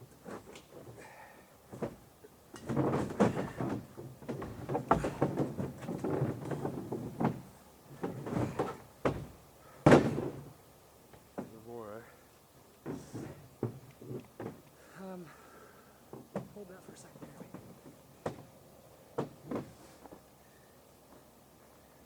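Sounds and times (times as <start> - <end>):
loud thump: 8.2 - 10.4.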